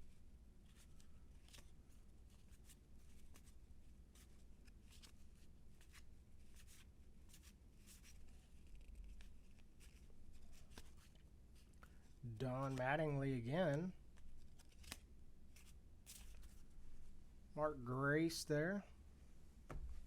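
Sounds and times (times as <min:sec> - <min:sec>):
trading cards sliding and flipping: 0:00.7 - 0:03.6, 0:04.2 - 0:16.7.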